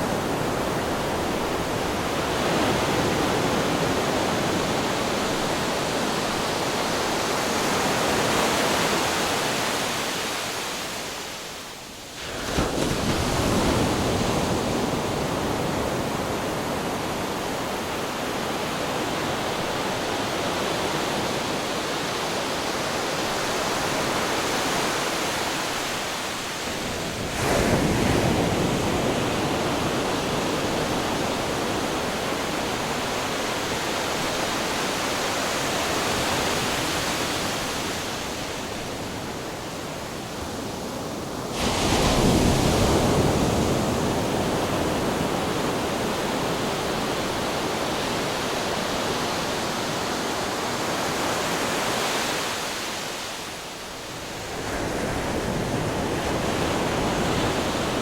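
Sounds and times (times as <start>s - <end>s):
ocean waves crashing on rocks: 18.1s - 39.5s, 40.2s - 53.5s.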